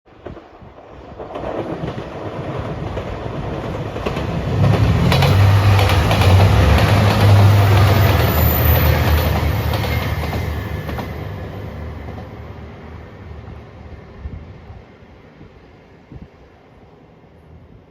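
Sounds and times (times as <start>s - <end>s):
wheels clattering over rail joints: 2.9s - 12.4s
diesel train engine drone: 3.8s - 16.1s.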